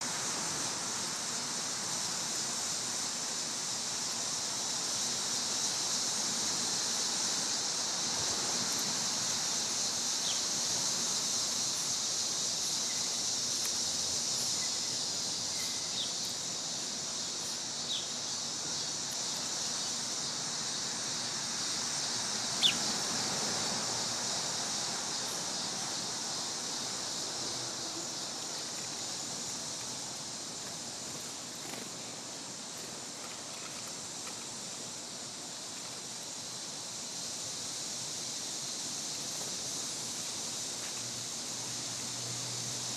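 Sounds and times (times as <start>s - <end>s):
cicadas droning: 0.0s - 42.9s
bird chirps: 22.6s - 22.9s.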